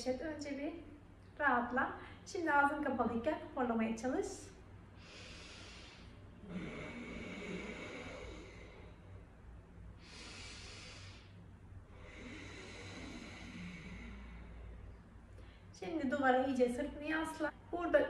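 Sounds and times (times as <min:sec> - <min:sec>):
person snoring through nose: 0:05.2 - 0:08.9, 0:12.0 - 0:14.6.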